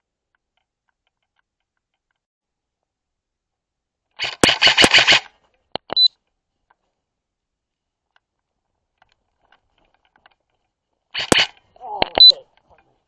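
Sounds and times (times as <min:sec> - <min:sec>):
airsoft gun single shots: 0:04.2 - 0:05.3, 0:11.2 - 0:12.3
airsoft gun full-auto burst: 0:04.2 - 0:05.4, 0:11.2 - 0:11.6.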